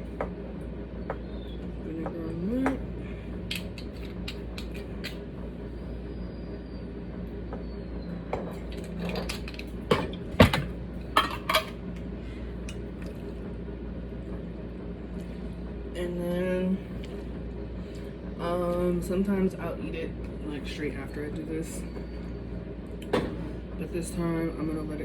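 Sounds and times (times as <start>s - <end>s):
containers clinking: 8.4s - 11.8s.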